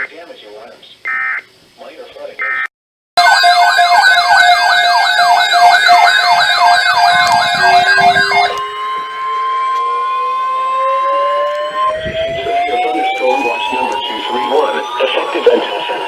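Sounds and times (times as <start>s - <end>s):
electronic siren yelping: 1.1s - 1.5s, 2.4s - 16.0s
siren rising in pitch: 3.2s - 16.0s.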